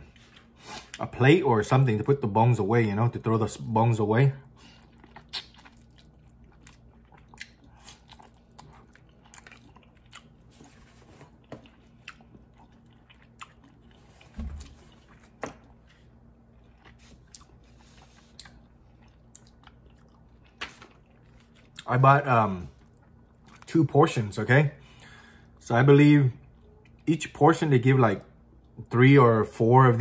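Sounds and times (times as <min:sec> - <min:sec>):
wet chewing and crunching: 0:04.4 - 0:23.8.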